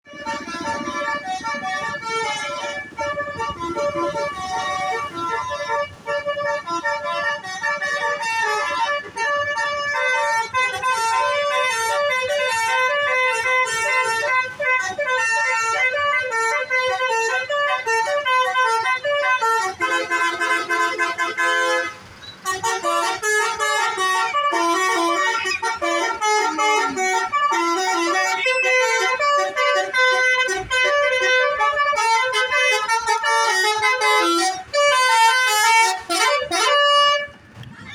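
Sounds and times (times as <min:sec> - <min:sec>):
bus musical horn melody: 0:00.0 - 0:37.7.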